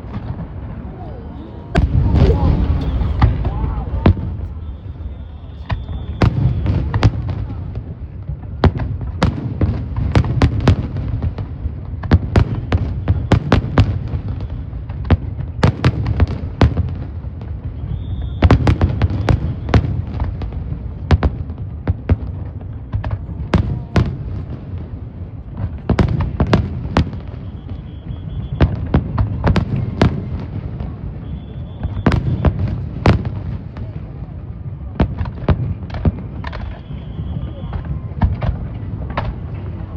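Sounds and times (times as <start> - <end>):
fireworks bursting with sharp bangs: 0.0 - 39.9
high whistling tones: 2.4 - 6.6.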